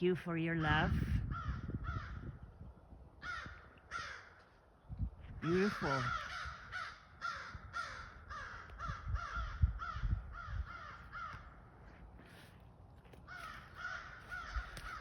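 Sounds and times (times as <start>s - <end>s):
crows cawing: 1.3s - 2.4s, 3.2s - 4.7s, 5.7s - 12.0s, 13.0s - 15.0s.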